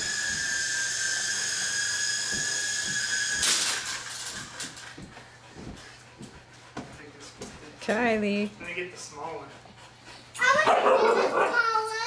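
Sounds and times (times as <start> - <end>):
toy helicopter motor whining: 0.0 - 5.0.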